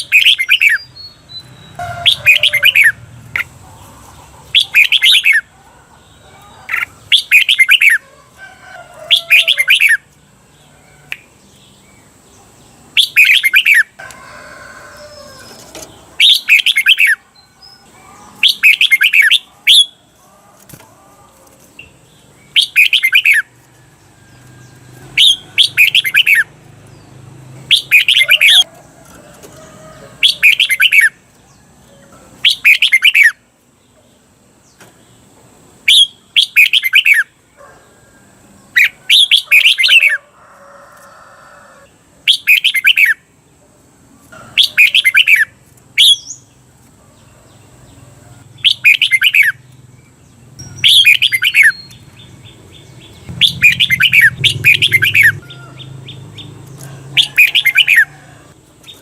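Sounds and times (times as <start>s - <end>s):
bird singing warbling phrases: 0.0s - 8.0s, 9.0s - 14.0s, 15.1s - 20.8s, 21.4s - 23.5s, 24.7s - 28.7s, 30.1s - 34.2s, 35.8s - 37.8s, 38.7s - 40.3s, 42.2s - 43.3s, 44.6s - 46.6s, 48.6s - 56.6s, 57.2s - 59.0s.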